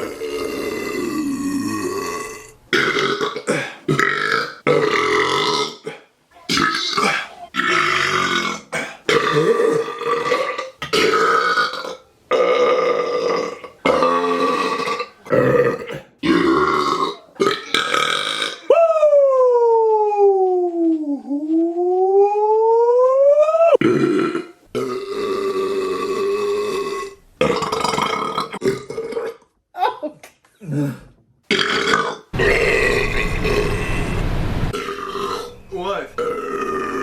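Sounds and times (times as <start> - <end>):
man burping loudly: 0.0 - 6.0, 6.6 - 18.7, 23.8 - 29.5, 30.6 - 33.8, 36.2 - 37.0.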